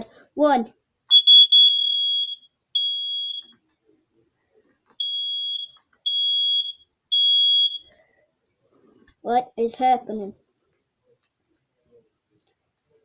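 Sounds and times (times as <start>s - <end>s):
smoke detector beeping: 1.1s - 3.6s, 5.0s - 7.9s.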